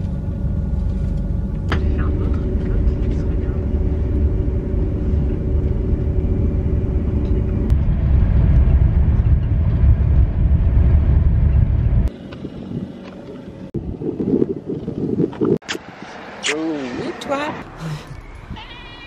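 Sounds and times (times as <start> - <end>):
steady low rumble: 0.0 - 16.2
faint steady hum: 0.9 - 7.9.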